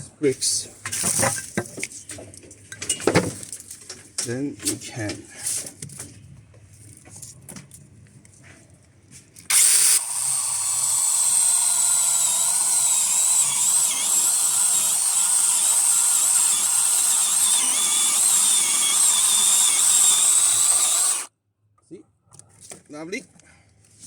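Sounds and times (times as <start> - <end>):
electric chainsaw cutting wood: 9.5 - 21.3.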